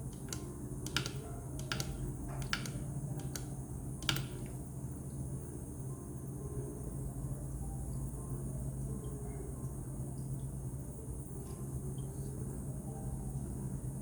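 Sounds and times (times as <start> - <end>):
dripping water clicks: 0.0 - 4.7
humidifier humming: 0.0 - 14.0.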